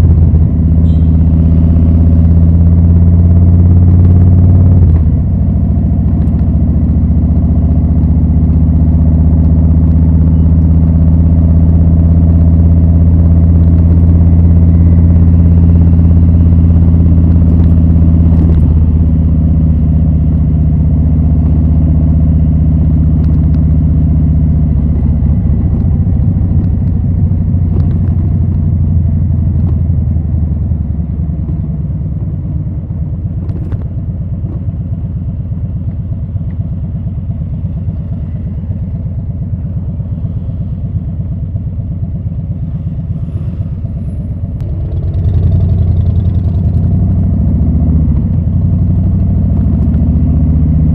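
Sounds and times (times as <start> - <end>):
motorcycle engine running: 0.0 - 50.9.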